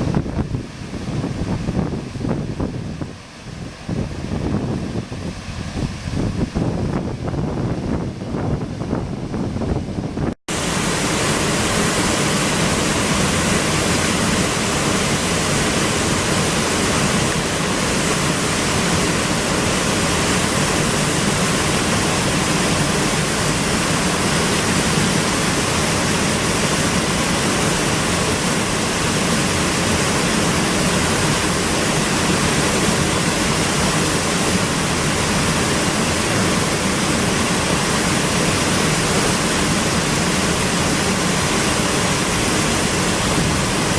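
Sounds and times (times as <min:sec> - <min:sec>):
waterfall rushing: 0:10.5 - 0:43.9.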